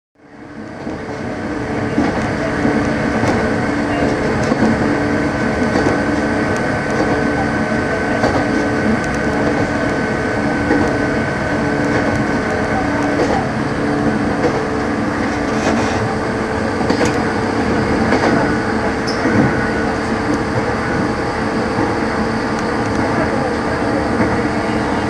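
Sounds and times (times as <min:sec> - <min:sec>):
electric train running: 0:00.3 - 0:25.0
sharp clicks: 0:11.8 - 0:13.5.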